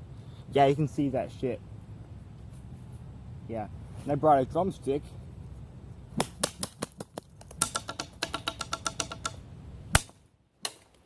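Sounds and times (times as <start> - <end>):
drumstick tapping hard object: 7.4 - 9.4.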